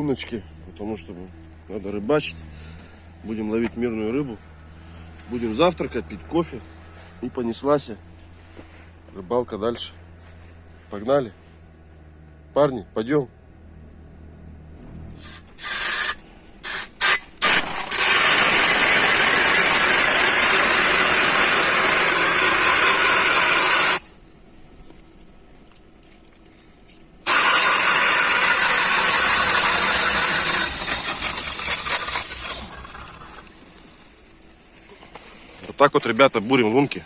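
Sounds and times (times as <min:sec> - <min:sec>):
powered ice auger drilling: 0:15.2 - 0:24.0, 0:27.2 - 0:33.8.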